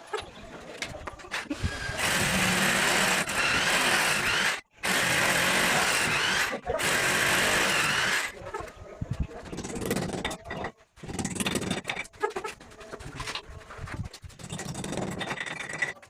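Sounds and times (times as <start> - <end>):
power tool running: 1.5 - 8.4.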